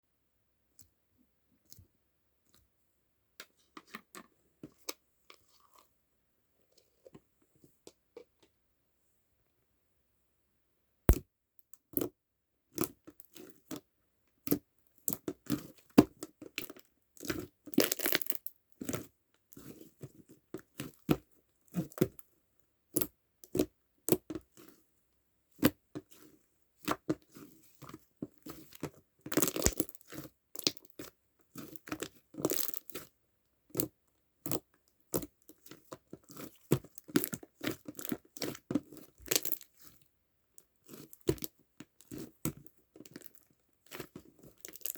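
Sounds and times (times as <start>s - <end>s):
sticky slime clicks and pops: 29.4s - 29.9s.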